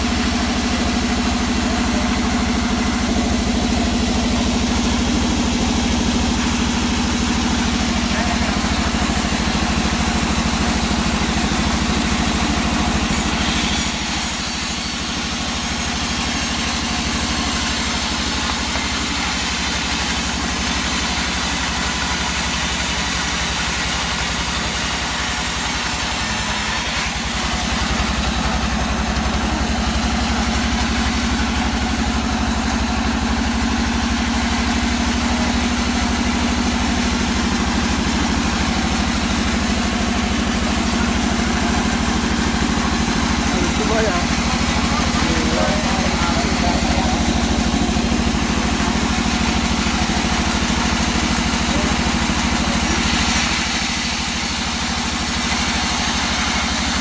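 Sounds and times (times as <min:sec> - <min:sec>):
log saw engine running: 0:00.0 - 0:57.0.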